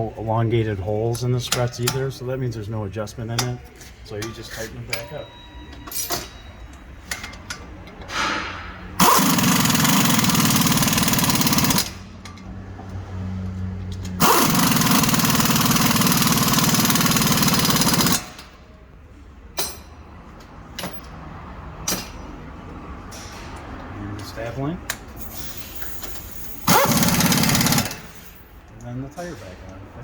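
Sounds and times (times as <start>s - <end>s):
impact wrench hammering: 7.1s - 12.3s, 14.2s - 18.6s, 26.6s - 28.4s.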